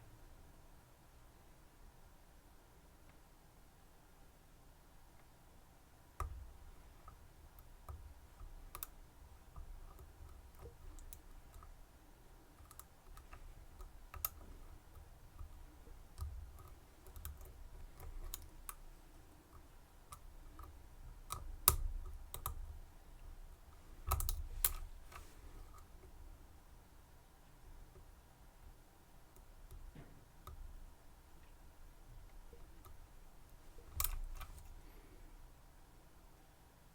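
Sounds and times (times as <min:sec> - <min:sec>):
lock pick clicks and taps: 0:06.2 - 0:11.8, 0:12.4 - 0:22.8, 0:23.7 - 0:26.2, 0:32.2 - 0:34.6.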